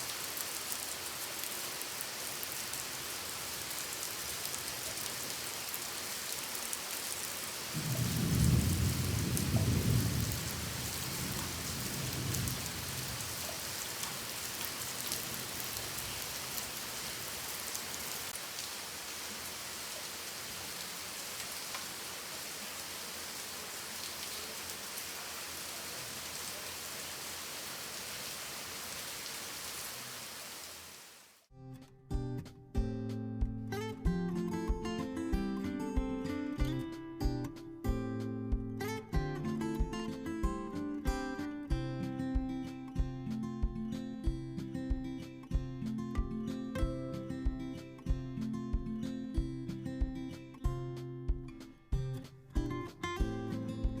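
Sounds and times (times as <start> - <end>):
steady rain falling: 0.0 - 31.5
thunder rumbling: 7.7 - 16.4.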